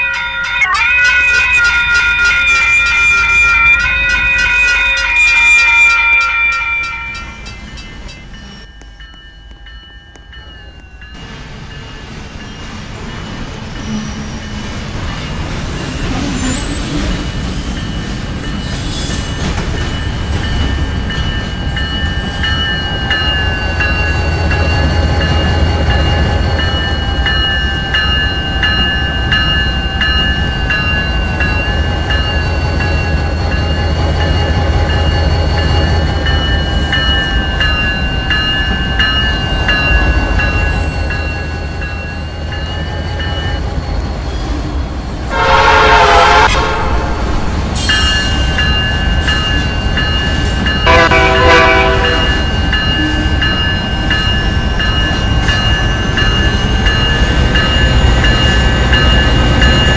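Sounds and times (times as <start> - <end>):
low train rumble: 0.0 - 59.9
wheels squealing on rails: 0.0 - 59.9
train horn chord: 45.3 - 47.5, 50.8 - 52.5.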